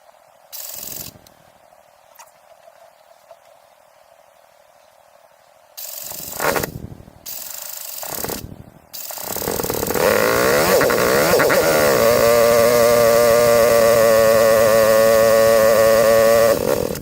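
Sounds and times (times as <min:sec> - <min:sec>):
motorcycle engine starting and revving: 0:08.0 - 0:17.0.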